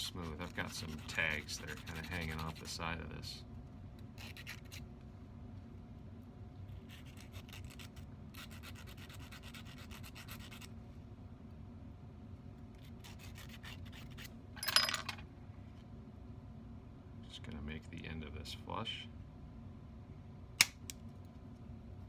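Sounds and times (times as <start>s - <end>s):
hand file scraping ring band: 0.1s - 2.8s, 7.0s - 10.7s.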